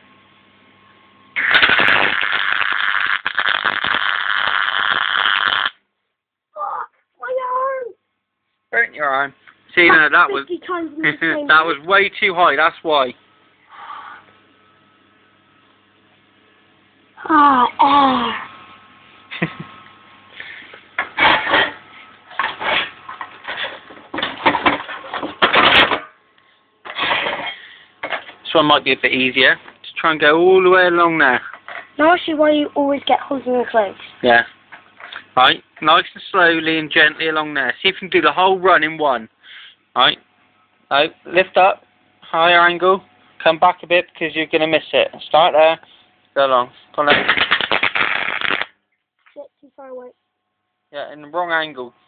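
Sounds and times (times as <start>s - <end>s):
welding arc crackling: 1.4s - 5.8s, 47.0s - 48.8s
man speaking: 8.8s - 13.2s.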